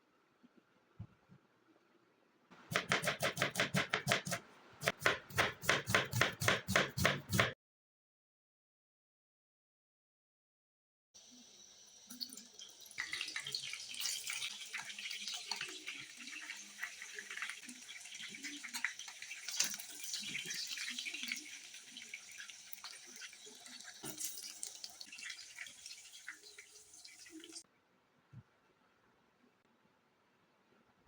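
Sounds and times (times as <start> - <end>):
hot oil sizzling and popping: 11.2 - 27.6.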